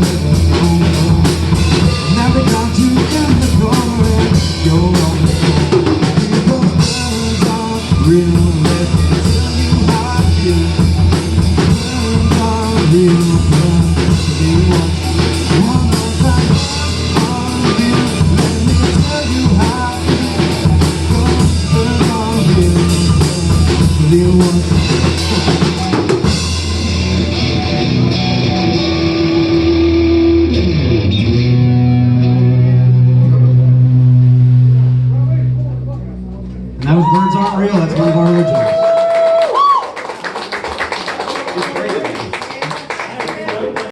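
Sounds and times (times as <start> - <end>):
drum kit beat: 0.0 - 30.9
electric guitar: 0.0 - 41.3.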